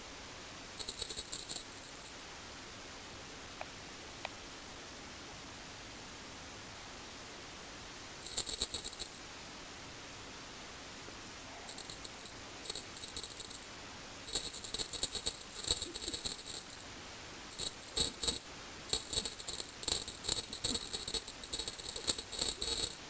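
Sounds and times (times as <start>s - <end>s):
jingle bell jingling: 0.8s - 2.1s, 8.2s - 9.2s, 11.7s - 13.6s, 14.3s - 16.8s, 17.6s - 23.0s.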